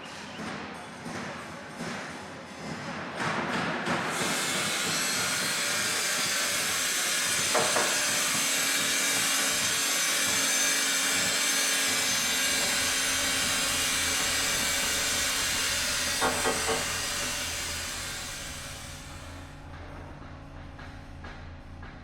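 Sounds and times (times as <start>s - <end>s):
steady hiss of machinery: 3.9s - 19.6s.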